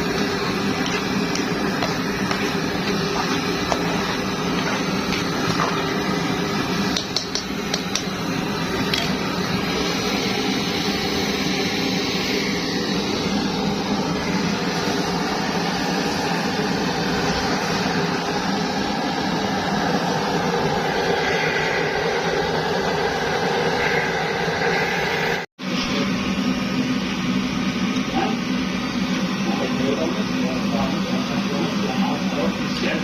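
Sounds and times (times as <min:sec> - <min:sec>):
pressure stove hissing: 0:00.0 - 0:25.5.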